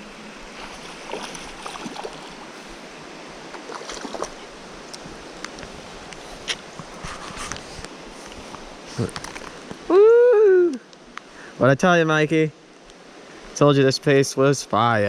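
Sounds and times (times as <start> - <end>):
river water rushing: 0.0 - 7.0
small splashes and clicks: 3.5 - 6.2.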